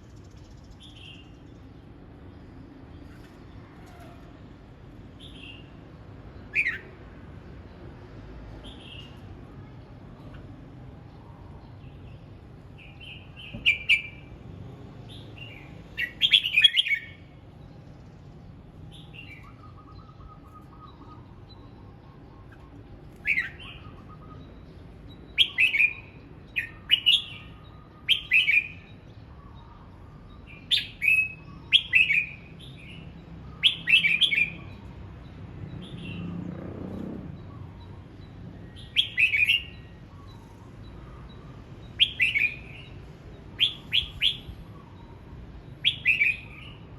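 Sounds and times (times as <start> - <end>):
bird warbling song: 6.4 - 7.0, 18.9 - 34.9, 37.0 - 46.9.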